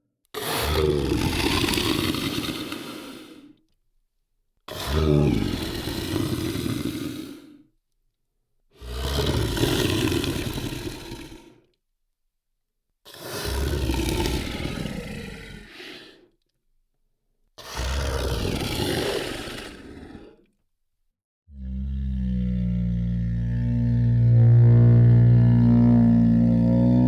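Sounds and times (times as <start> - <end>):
deep monster bellow: 21.5 - 27.0.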